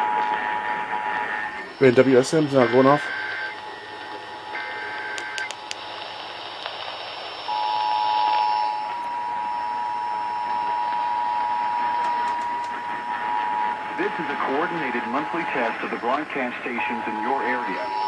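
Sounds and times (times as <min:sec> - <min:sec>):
screeching data tones: 0:00.0 - 0:05.7, 0:07.5 - 0:18.0
radio hiss: 0:00.0 - 0:18.0
two-tone attention signal: 0:07.5 - 0:18.0.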